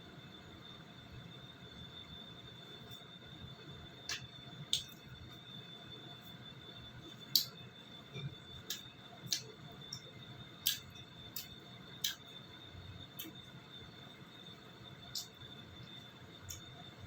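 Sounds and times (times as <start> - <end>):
faint high whine: 0.0 - 17.0
eating clicks: 10.6 - 12.2, 15.1 - 15.3.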